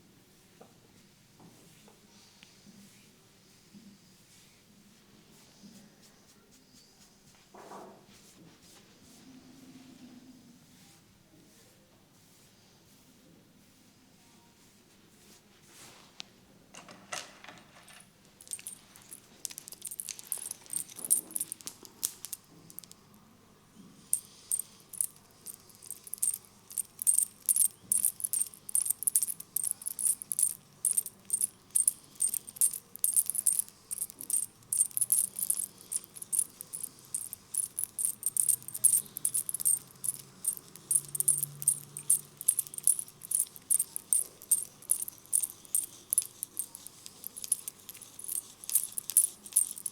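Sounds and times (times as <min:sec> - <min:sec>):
head massage clicking and scratching: 0:18.4 - 0:23.1, 0:24.1 - 0:49.9.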